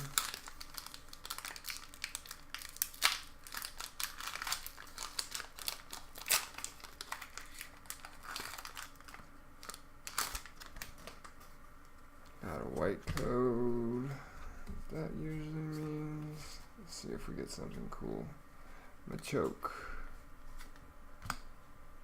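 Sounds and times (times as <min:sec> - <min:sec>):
foil tearing: 0:00.0 - 0:11.2
foil wrapper crinkling: 0:00.0 - 0:11.5.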